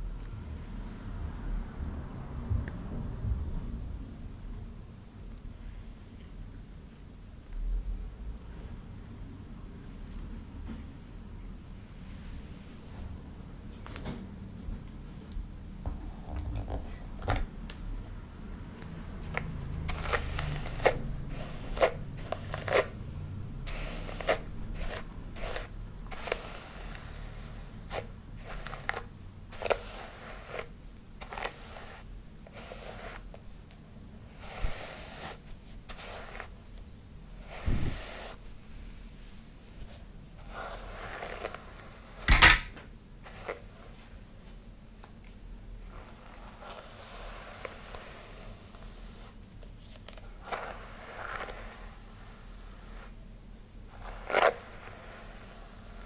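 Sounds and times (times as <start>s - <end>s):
hair being combed: 18.5s - 33.4s.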